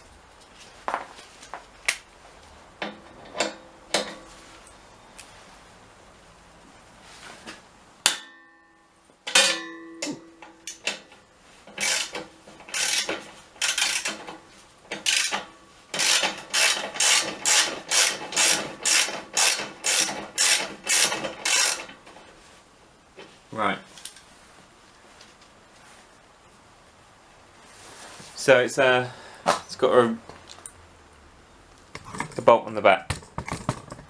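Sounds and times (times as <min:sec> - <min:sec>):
ratchet wrench clicking: 0:11.8 - 0:14.2, 0:15.0 - 0:15.4, 0:16.0 - 0:21.9.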